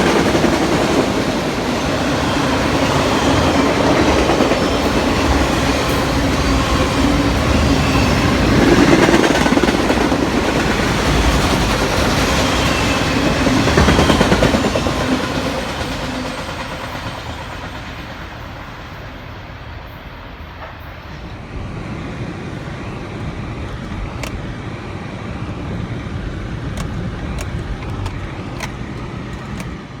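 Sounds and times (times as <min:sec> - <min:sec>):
train wheels rumbling on rails: 0:00.0 - 0:30.0.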